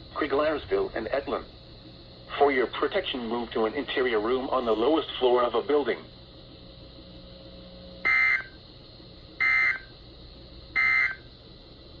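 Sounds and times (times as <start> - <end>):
digital data tone bursts: 8.0 - 8.6, 10.8 - 11.3.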